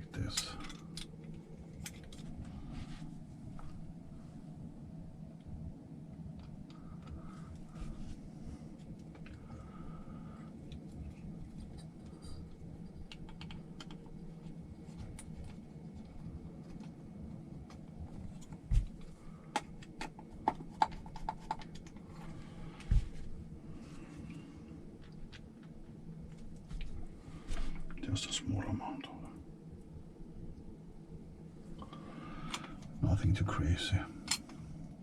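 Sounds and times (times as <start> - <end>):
low steady hum: 0.0 - 35.0.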